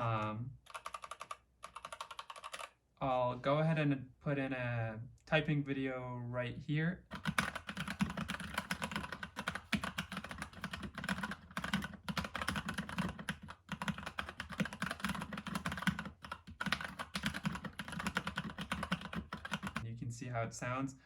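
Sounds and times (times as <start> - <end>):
mechanical keyboard typing: 0.6 - 2.7, 7.1 - 19.8.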